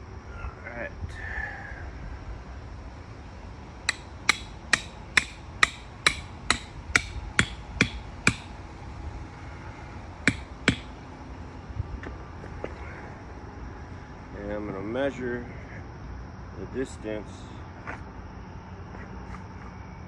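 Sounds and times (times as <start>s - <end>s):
hammer strikes ringing: 3.9s - 8.5s, 10.3s - 10.9s.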